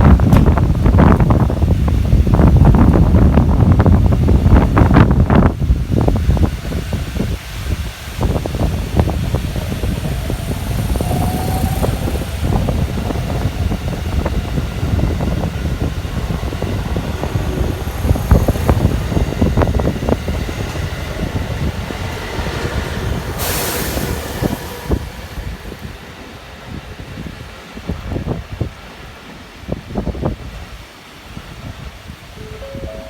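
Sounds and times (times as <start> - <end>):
train rumble: 0.0 - 33.0
wheels clacking over rail joints: 6.7 - 26.4.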